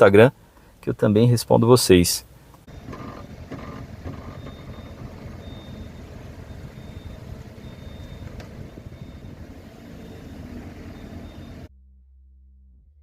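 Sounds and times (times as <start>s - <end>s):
low vehicle rumble: 2.4s - 13.0s
faint high-pitched beep: 4.3s - 11.7s.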